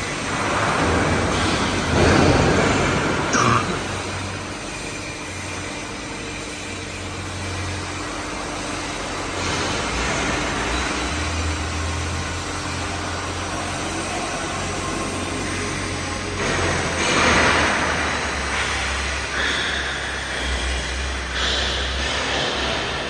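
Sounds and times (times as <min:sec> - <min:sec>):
machine humming and hissing: 0:00.0 - 0:23.0.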